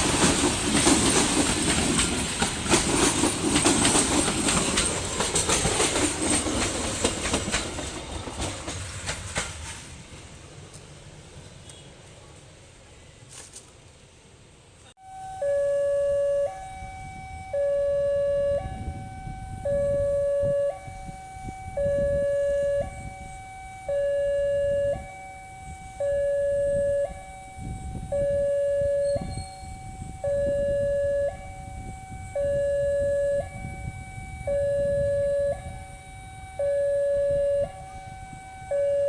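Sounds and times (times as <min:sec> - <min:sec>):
two-tone crossing alarm: 0:15.0 - 0:39.0.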